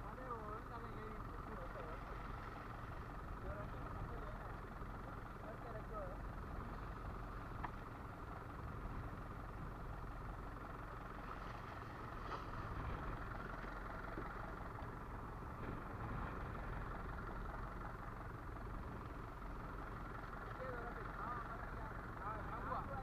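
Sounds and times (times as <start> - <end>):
boat engine running: 0.0 - 23.0.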